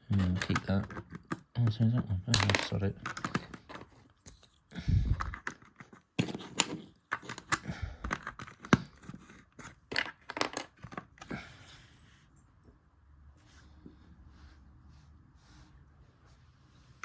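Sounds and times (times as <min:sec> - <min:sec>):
plastic toy bricks clicking: 0:00.1 - 0:03.9, 0:05.1 - 0:11.3.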